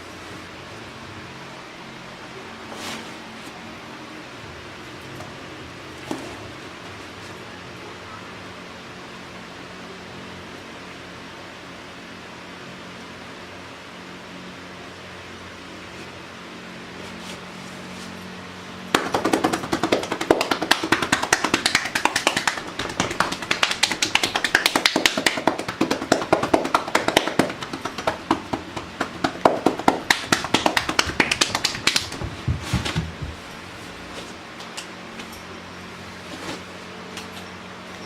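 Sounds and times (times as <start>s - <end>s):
hands patting a body: 18.9s - 33.6s.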